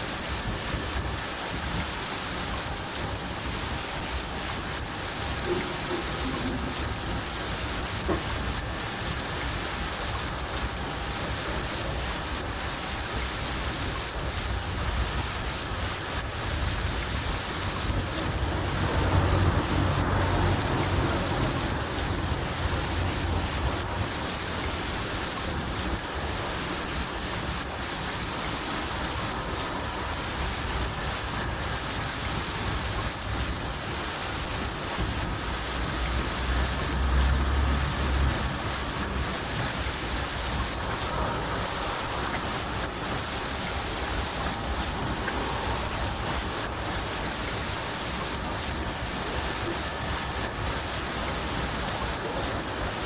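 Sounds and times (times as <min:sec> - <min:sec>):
cricket chirping: 0:00.0 - 0:53.0
steady rain: 0:00.0 - 0:53.0
low roll of thunder: 0:05.2 - 0:08.5, 0:16.3 - 0:26.0.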